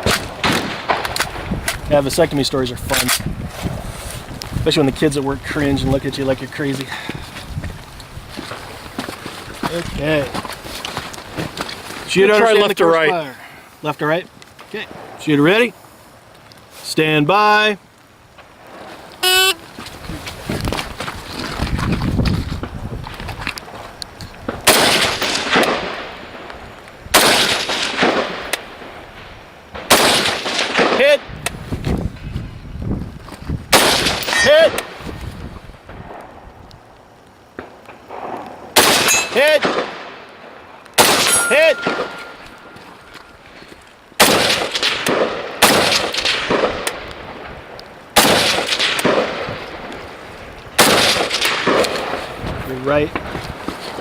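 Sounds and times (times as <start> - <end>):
rifle shots with echo: 24.6 - 26.1, 27.1 - 28.8, 29.8 - 31.3, 37.6 - 40.2, 41.0 - 42.7, 44.2 - 47.0, 48.2 - 49.5, 50.8 - 52.2.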